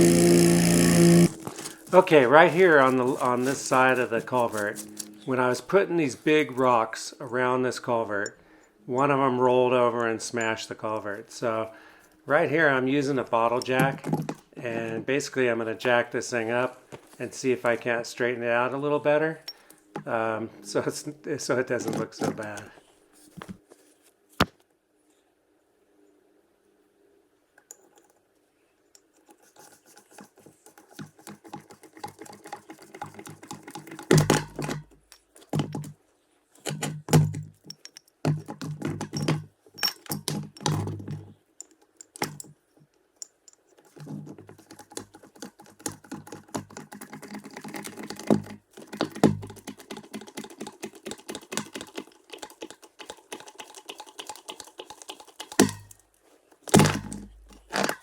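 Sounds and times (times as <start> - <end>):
jack clicking: 0.0 - 5.3
metal knocking and popping: 31.0 - 36.0, 36.6 - 42.6, 43.8 - 56.0, 56.7 - 58.0.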